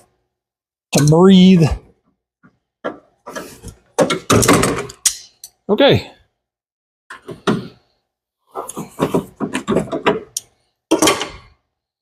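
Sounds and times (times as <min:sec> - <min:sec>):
tools knocking and clunking: 0:02.4 - 0:05.6, 0:07.1 - 0:07.8, 0:08.7 - 0:11.5.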